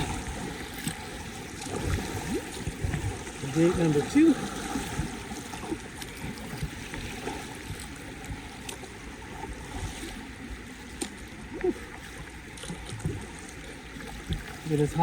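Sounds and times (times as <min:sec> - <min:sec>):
river water rushing: 0:00.0 - 0:08.1
paddle splashes and knocks: 0:00.0 - 0:15.0.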